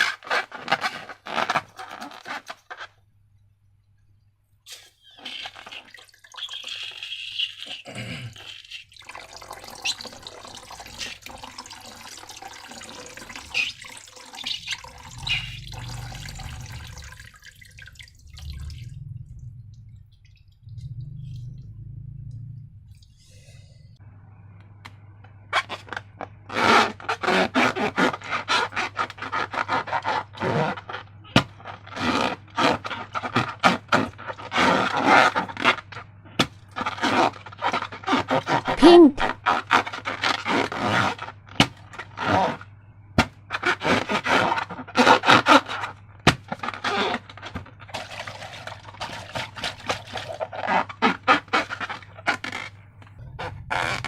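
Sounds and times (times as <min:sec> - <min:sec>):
steady low hum: 0:14.8 - 0:25.2.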